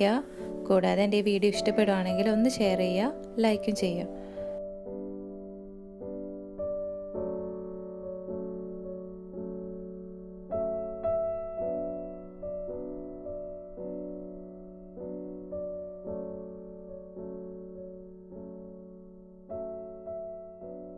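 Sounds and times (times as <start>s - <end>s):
slow gentle piano tune: 0.0s - 20.9s.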